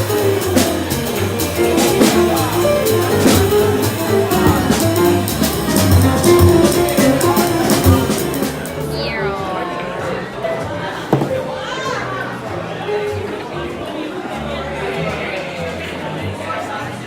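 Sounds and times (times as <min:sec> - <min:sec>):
jazz music: 0:00.0 - 0:11.7.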